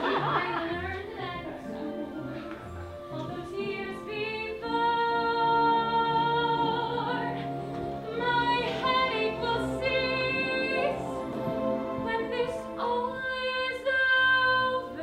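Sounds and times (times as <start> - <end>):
slow operatic singing: 0.0 - 15.0.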